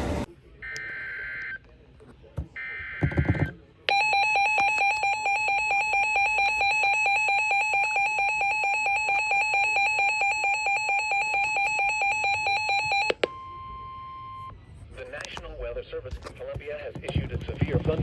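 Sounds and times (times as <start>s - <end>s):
steady warning alarm tone: 3.9s - 14.5s.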